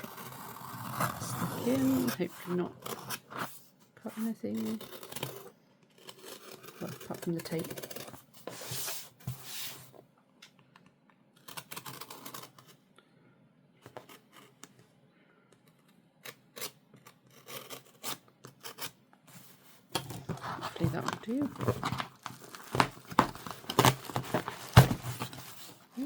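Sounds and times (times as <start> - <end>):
clicks and scrapes on cardboard: 13.8 - 14.8
blade cutting packing tape: 20.0 - 25.8.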